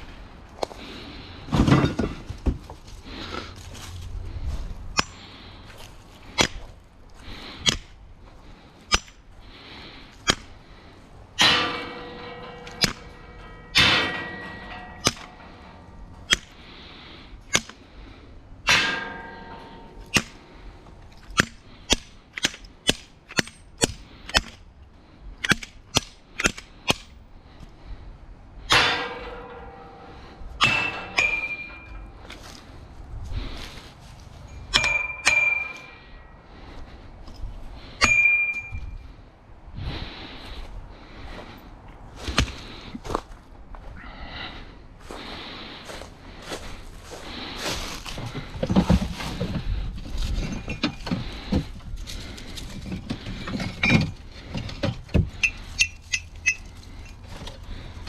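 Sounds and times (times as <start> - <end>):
sharp clicks and metallic bangs: 11.3 - 16.6, 18.6 - 24.7, 28.6 - 32.3, 34.6 - 36.3.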